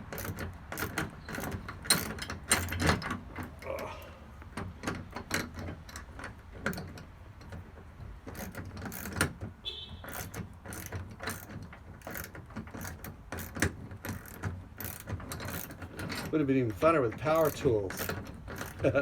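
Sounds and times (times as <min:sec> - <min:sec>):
ratchet wrench clicking: 0:00.0 - 0:03.0, 0:08.3 - 0:09.4, 0:10.0 - 0:19.0.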